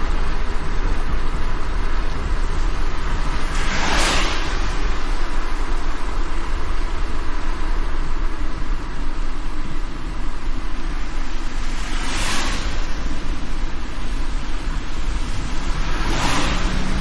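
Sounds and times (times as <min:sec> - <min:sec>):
low road rumble: 0:00.0 - 0:17.0
rain and wet tyres hiss: 0:00.0 - 0:17.0
car swish: 0:02.1 - 0:05.8, 0:11.3 - 0:14.0, 0:15.1 - 0:17.0.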